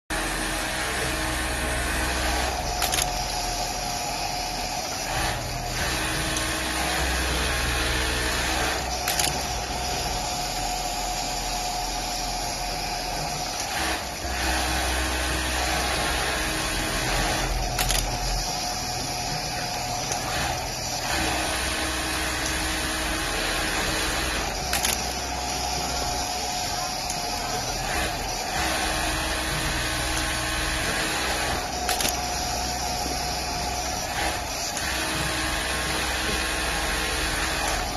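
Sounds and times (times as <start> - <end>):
sewing machine running: 0.1 - 37.9.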